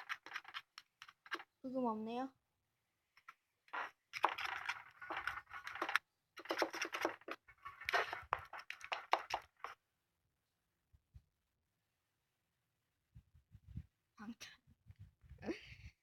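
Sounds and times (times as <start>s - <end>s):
computer keyboard typing: 0.0s - 1.5s, 3.7s - 9.8s.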